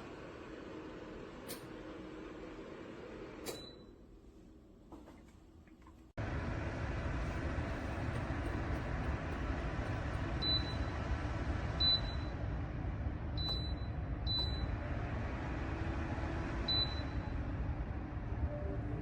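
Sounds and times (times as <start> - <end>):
heater fan blowing: 0.0 - 3.6, 6.2 - 19.0.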